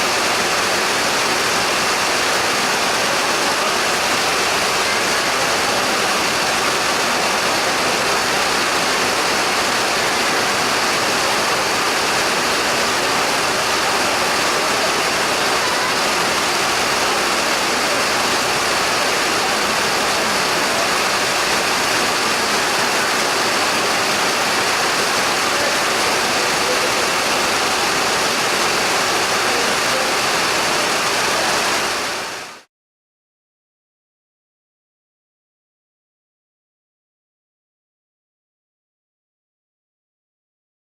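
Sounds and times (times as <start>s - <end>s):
heavy rain falling: 0.0s - 32.7s.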